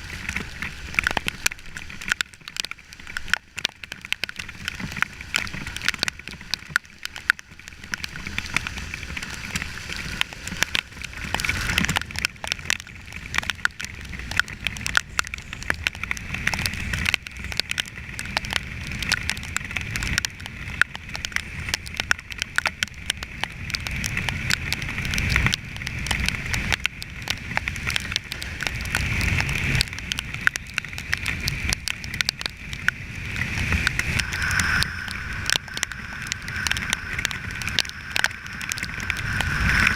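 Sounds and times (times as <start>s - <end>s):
rain ticking on camera: 0.0s - 39.9s
wind rush: 33.0s - 39.9s.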